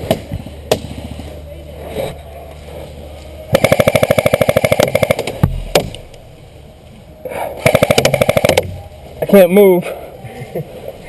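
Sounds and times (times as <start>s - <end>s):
airsoft gun rapid firing: 3.5s - 5.4s, 7.6s - 8.7s
sharp crack: 3.5s - 6.4s.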